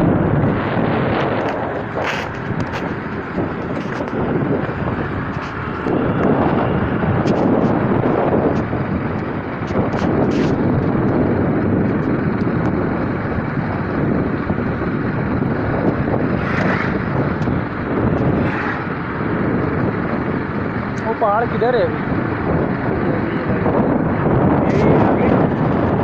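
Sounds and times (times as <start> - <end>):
motorbike running: 0.0 - 26.0
wind buffeting microphone: 0.0 - 26.0.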